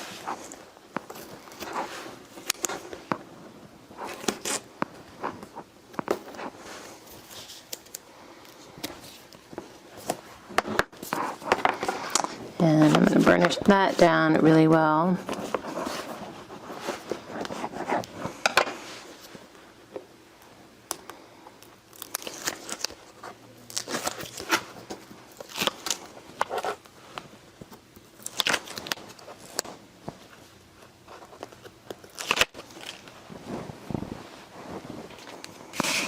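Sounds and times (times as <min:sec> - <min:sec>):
paper rubbing and crinkling: 0:15.1 - 0:19.4.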